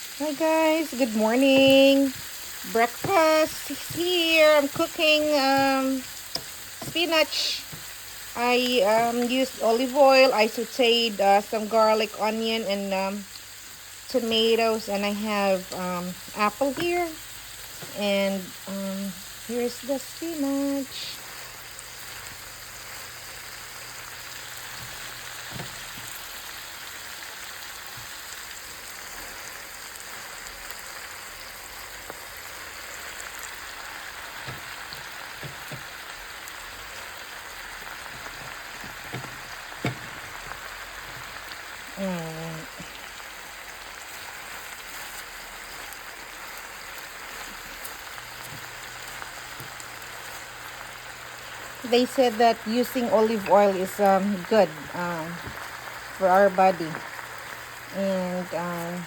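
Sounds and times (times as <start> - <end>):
spinach sizzling in a frying pan: 0.0 - 59.0.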